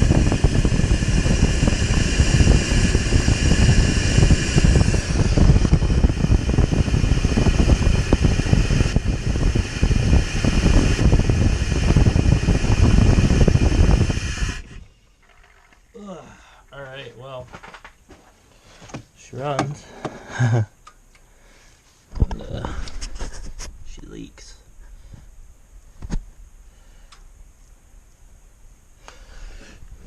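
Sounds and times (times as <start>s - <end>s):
engine running with low rumble: 0.0s - 14.9s
high whine: 0.0s - 17.9s.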